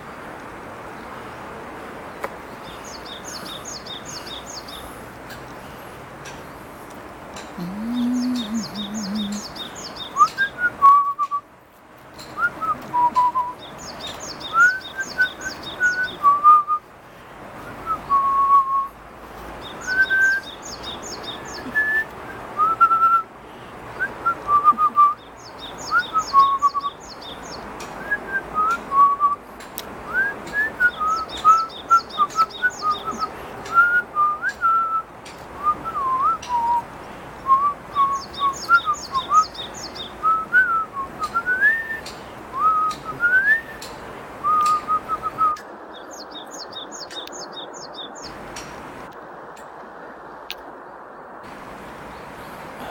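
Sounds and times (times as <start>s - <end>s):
person whistling chirping notes: 7.6s - 9.5s, 10.2s - 11.4s, 12.4s - 13.6s, 17.6s - 18.9s, 40.2s - 45.6s.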